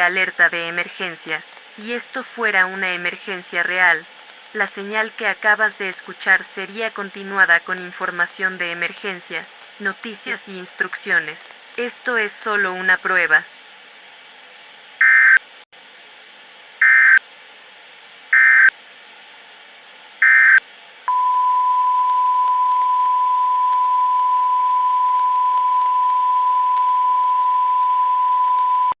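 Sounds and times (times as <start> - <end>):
short buzzy bleeps: 15.0 - 15.4, 16.8 - 17.2, 18.4 - 18.7, 20.2 - 29.0
steady high tone: 20.2 - 29.0.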